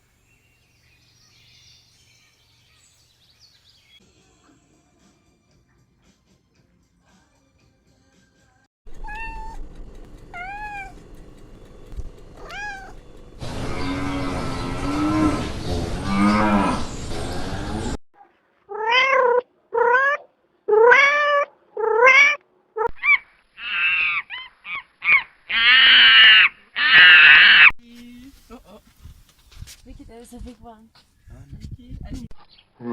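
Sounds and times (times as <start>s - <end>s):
cat meowing: 8.9s - 9.6s, 10.3s - 11.0s, 12.4s - 13.0s, 18.7s - 22.4s
low drawn-out animal call: 12.4s - 18.0s.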